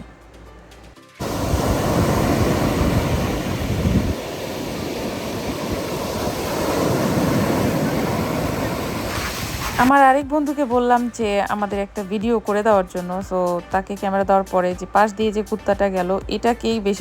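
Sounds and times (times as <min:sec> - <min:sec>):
waves on pebble beach: 0:01.2 - 0:09.9
wind buffeting microphone: 0:01.2 - 0:09.9.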